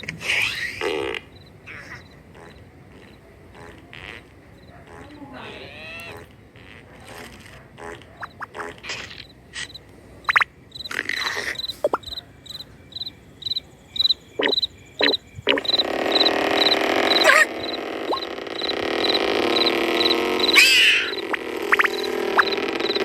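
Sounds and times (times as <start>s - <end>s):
crickets chirping: 1.3s - 3.2s, 4.6s - 4.8s, 9.0s - 23.0s.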